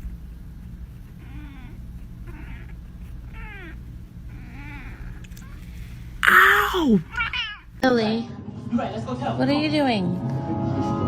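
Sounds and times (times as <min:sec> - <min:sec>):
cat meowing: 0:01.2 - 0:05.6, 0:06.2 - 0:07.7.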